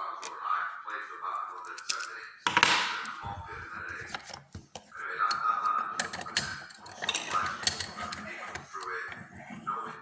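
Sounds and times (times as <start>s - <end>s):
lock pick clicking and scraping: 4.1s - 9.0s.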